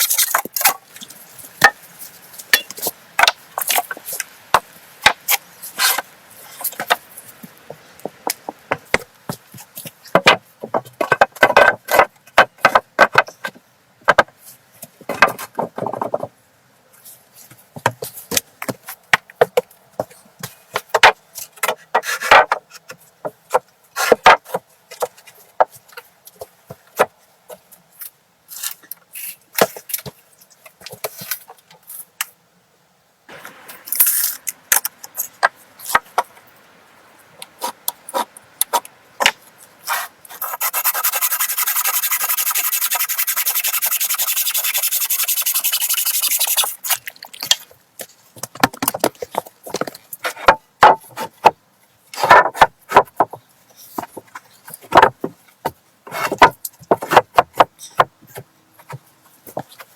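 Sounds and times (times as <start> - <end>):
scraping or rubbing: 39.8 - 47.1.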